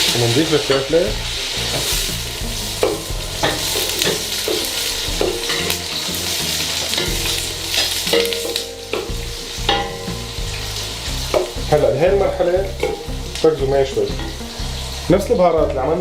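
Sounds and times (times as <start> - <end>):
utensil scraping a pan: 0.0 - 15.1
vegetables sizzling in oil: 0.0 - 16.0.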